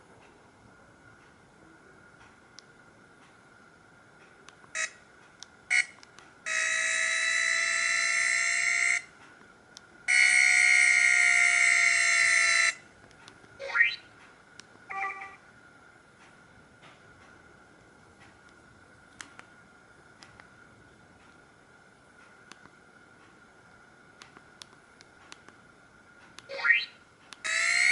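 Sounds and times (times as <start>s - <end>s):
mobile phone alert tones: 14.9s - 15.4s.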